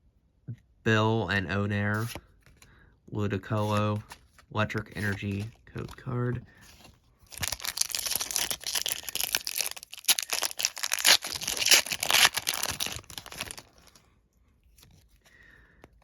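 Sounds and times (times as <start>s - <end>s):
foil wrapper tearing and crinkling: 7.3s - 14.0s.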